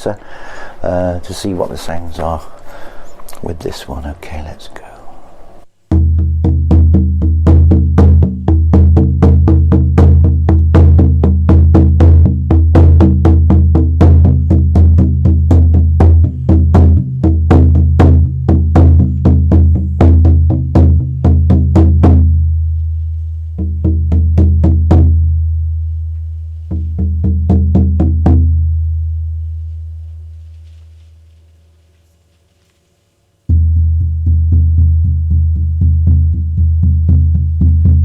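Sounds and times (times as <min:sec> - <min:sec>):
frame drum beating: 0:05.8 - 0:30.3, 0:33.5 - 0:38.0.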